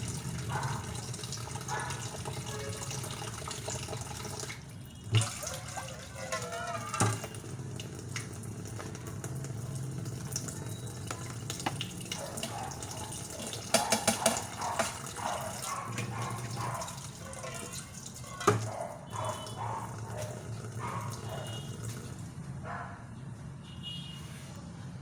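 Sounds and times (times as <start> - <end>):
tap water running into sink: 0.0 - 22.3
dishes clinking: 5.2 - 7.4.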